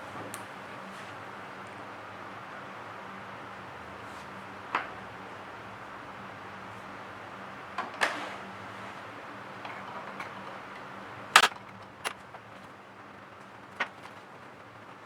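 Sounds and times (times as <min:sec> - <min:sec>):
small hard objects clicking: 0:11.4 - 0:12.2.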